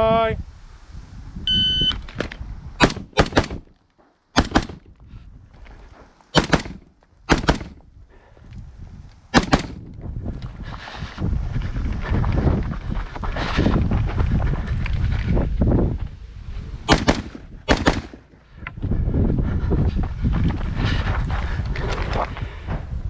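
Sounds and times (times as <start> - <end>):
rifle shots: 2.8 - 3.7, 4.4 - 5.0, 6.4 - 7.8, 9.4 - 9.9, 16.9 - 18.4.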